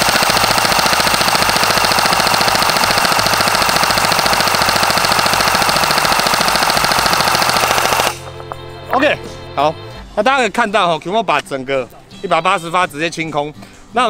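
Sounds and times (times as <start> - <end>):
airsoft gun full-auto burst: 0.0 - 8.2.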